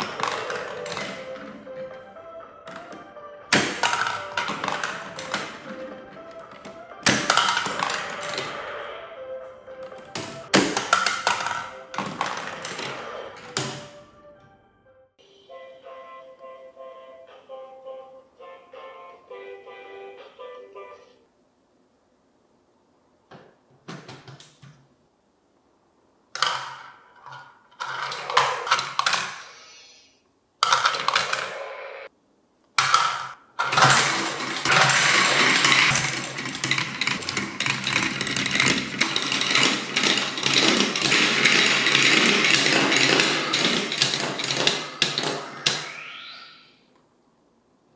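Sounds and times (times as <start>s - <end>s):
marbles rattling through plastic track: 0.0s - 1.4s, 3.6s - 6.4s, 7.1s - 8.6s, 10.1s - 13.0s, 32.8s - 45.9s.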